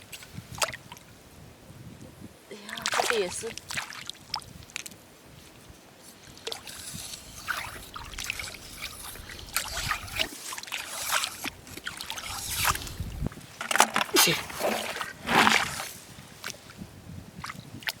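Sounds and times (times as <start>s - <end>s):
hands digging in wet sand: 6.5s - 13.1s, 14.1s - 16.0s.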